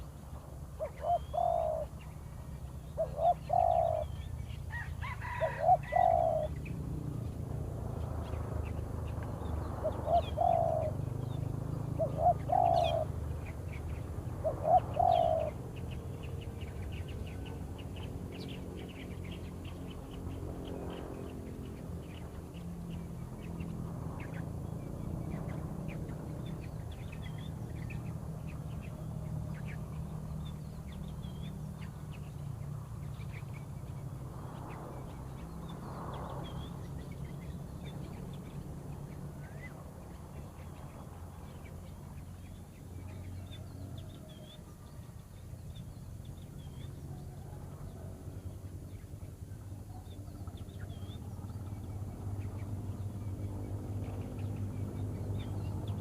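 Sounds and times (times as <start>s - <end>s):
birds chirping: 0.0s - 56.0s
lower bird calls: 0.8s - 6.8s, 8.2s - 21.2s.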